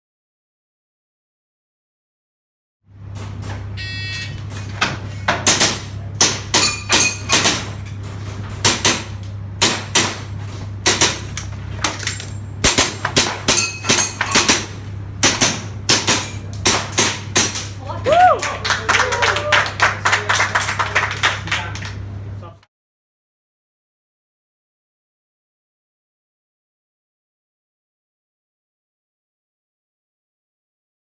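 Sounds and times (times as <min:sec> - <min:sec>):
steady low hum: 0:02.9 - 0:22.7.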